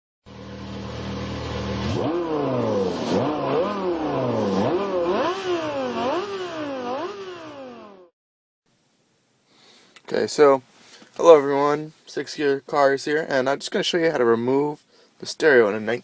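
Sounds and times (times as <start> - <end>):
engine idling and revving: 0.3 - 8.1.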